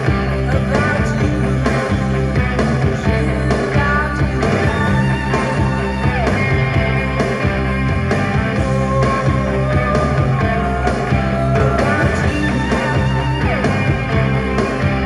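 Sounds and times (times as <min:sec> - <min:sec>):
rock music through speakers: 0:00.0 - 0:15.0.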